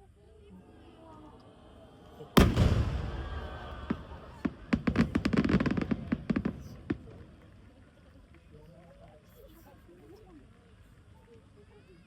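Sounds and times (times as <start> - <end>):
firework shell burst rumble: 2.4 - 6.9
crackling firework pops: 2.4 - 7.8.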